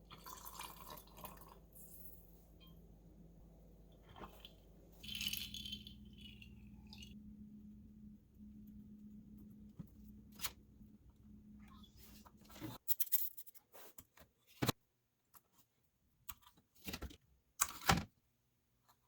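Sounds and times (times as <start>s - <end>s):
steady low hum: 1.6s - 12.6s.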